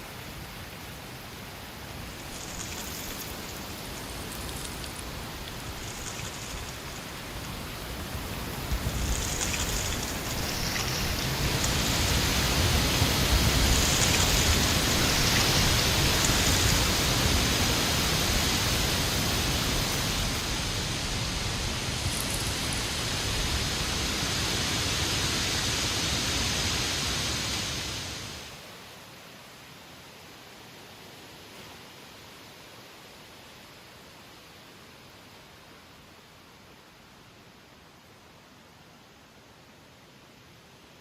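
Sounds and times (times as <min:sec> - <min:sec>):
strong wind blowing: 0:03.8 - 0:25.6
wind buffeting microphone: 0:04.0 - 0:23.7.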